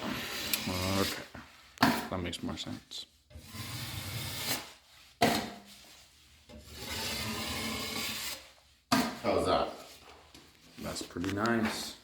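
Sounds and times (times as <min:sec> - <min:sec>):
drywall knife scraping compound: 0:00.0 - 0:02.3, 0:03.3 - 0:09.4.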